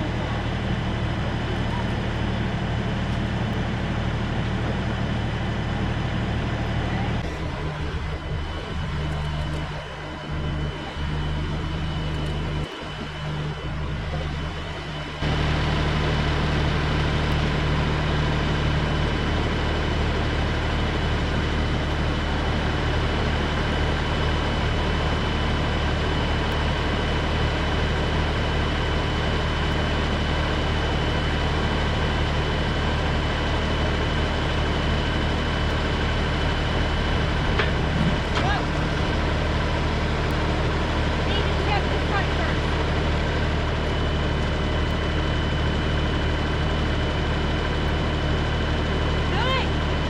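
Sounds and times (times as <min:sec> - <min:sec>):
tractor engine running: 0:00.0 - 0:50.0.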